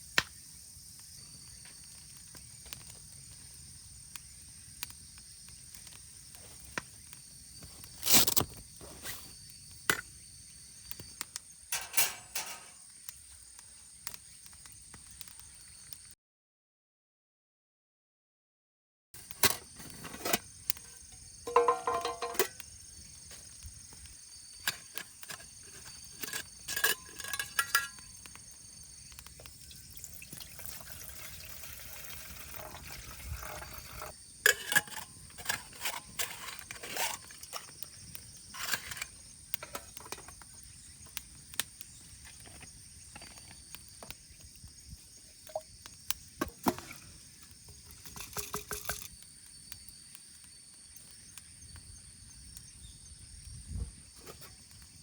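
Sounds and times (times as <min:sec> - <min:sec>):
high insect chirr: 0:00.0 - 0:16.1, 0:19.2 - 0:55.0
metal cookware clinking: 0:11.7 - 0:12.8, 0:21.5 - 0:22.6, 0:24.7 - 0:28.2, 0:32.4 - 0:37.6, 0:48.1 - 0:49.1
water being poured: 0:29.5 - 0:34.1.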